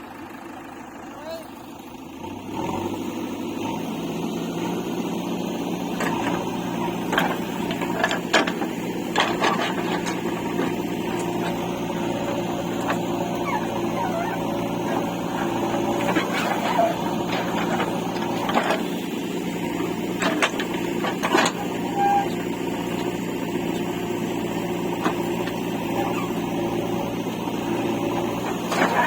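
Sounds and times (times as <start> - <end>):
diesel engine of digging machinery: 0.0 - 29.0
metallic clanks and knocks: 6.0 - 11.6, 15.3 - 19.0, 19.7 - 23.1.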